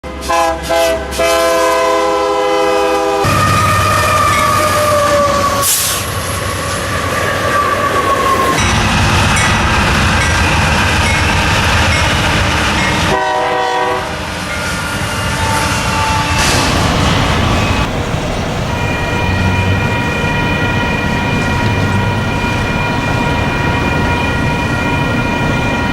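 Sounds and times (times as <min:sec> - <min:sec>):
locomotive horn: 0:00.0 - 0:06.1, 0:13.0 - 0:24.4
freight train rumble: 0:00.0 - 0:25.9.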